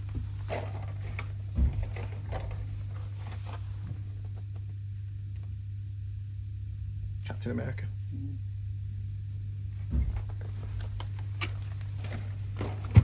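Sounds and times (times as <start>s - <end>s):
handling clicks and rustles: 0.0s - 4.6s, 10.1s - 13.0s
low hum: 0.0s - 13.0s
thump: 9.9s - 10.8s.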